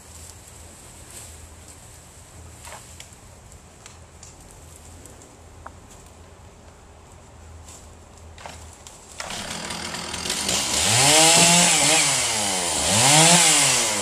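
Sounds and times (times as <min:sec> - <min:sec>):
chainsaw starting and revving: 0:09.2 - 0:14.0.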